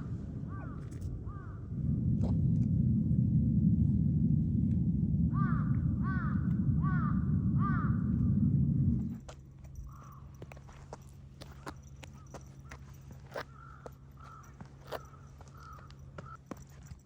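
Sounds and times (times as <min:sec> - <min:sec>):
loud low rumble: 0:00.0 - 0:10.4
crow cawing: 0:00.4 - 0:01.6, 0:05.3 - 0:08.0, 0:13.5 - 0:16.4.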